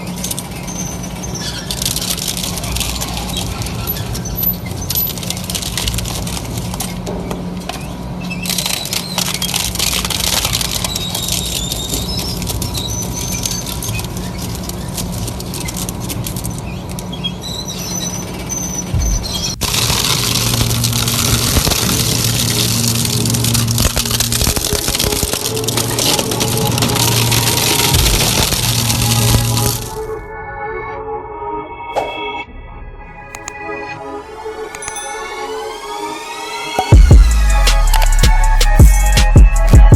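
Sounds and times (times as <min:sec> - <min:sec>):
short high squeals: 0:00.0 - 0:05.6, 0:07.8 - 0:15.7, 0:16.5 - 0:30.2
material crackling and breaking: 0:00.0 - 0:30.2
crushing machine motor humming: 0:00.0 - 0:30.3
loud steady grinding: 0:18.4 - 0:30.1.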